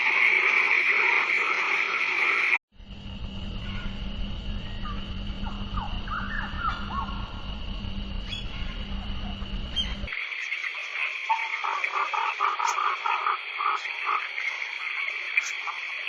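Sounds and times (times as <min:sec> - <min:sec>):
frogs calling: 0:00.0 - 0:02.6, 0:03.5 - 0:16.0
high insect chorus: 0:00.0 - 0:16.0
low rumble: 0:02.8 - 0:10.1.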